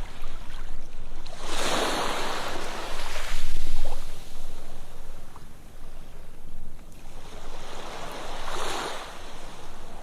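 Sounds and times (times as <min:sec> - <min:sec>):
low rumble of surf: 0:00.0 - 0:10.0
sea waves washing onto beach: 0:07.0 - 0:10.0.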